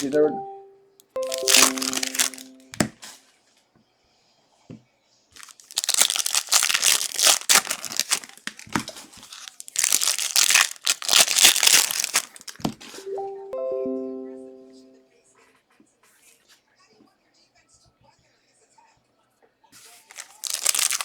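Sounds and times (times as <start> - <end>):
plastic wrappers crinkling: 1.2 - 3.0, 5.4 - 13.1, 19.8 - 21.0.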